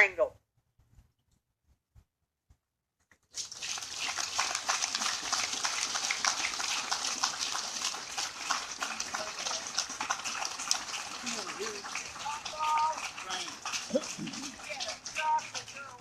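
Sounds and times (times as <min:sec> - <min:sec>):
crowd applauding: 0:03.4 - 0:16.0.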